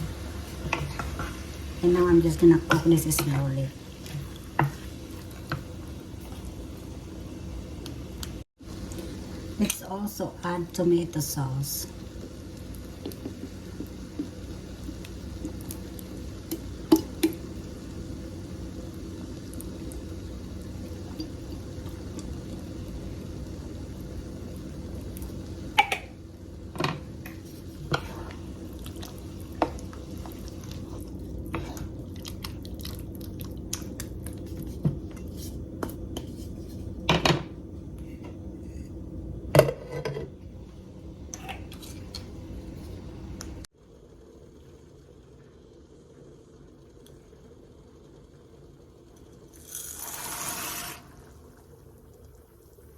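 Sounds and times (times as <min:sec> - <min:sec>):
steady low hum: 0:00.0 - 0:49.6.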